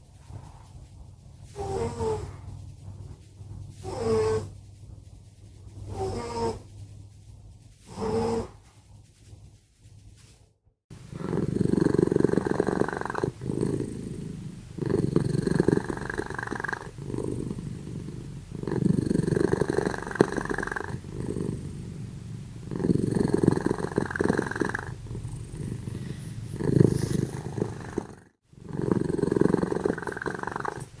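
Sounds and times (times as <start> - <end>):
cat snoring: 1.5 - 2.3, 3.8 - 4.5, 11.1 - 31.0.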